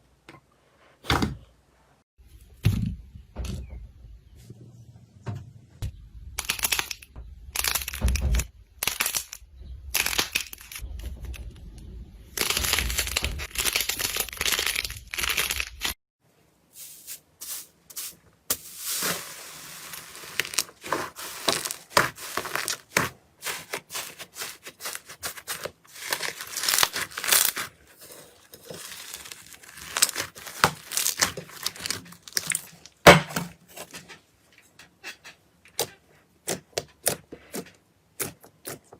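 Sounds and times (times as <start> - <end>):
slime crackling and popping: 19.9 - 27.7, 28.6 - 32.8.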